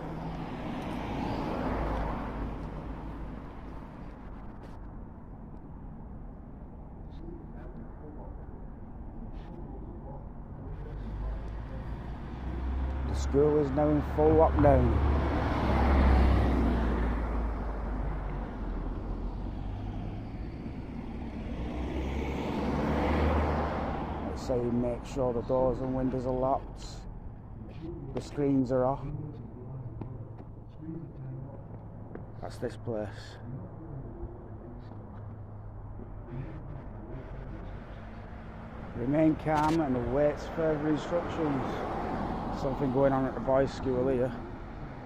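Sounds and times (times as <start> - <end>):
car passing: 0.0 - 4.7, 10.7 - 27.6, 34.4 - 45.0
road traffic rumble: 0.0 - 45.0.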